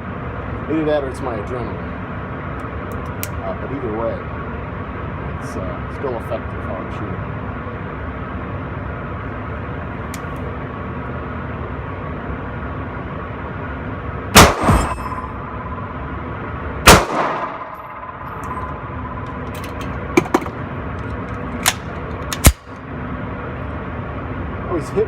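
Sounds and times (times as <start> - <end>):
pistol shots: 14.4 - 15.9, 16.8 - 20.3, 21.6 - 22.8.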